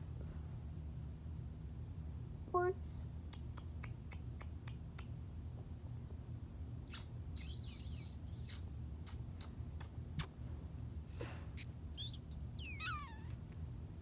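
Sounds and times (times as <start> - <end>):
lip clicks: 3.3 - 5.2, 6.9 - 7.5, 8.4 - 10.4
squeaky kissing sounds: 6.9 - 10.4, 11.6 - 13.4.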